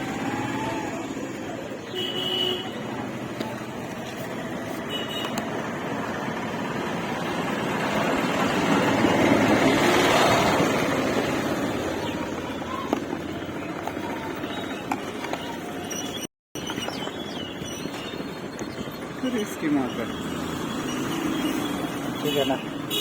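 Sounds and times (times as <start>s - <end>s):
vehicle passing by: 5.6s - 12.8s.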